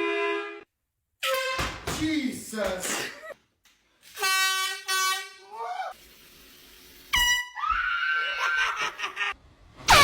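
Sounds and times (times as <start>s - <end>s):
air horn blasting: 0.0s - 1.8s, 4.2s - 5.6s, 7.1s - 7.6s
person crying out startled: 7.6s - 9.1s.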